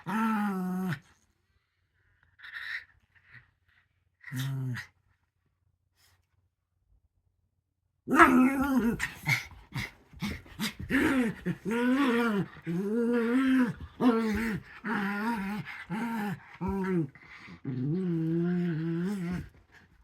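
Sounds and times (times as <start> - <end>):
small dog growling whines: 8.1 - 19.6.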